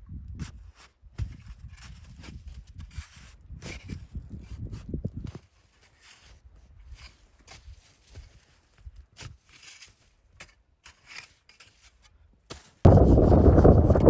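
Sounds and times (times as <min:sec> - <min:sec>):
wind buffeting microphone: 0:12.9 - 0:14.0.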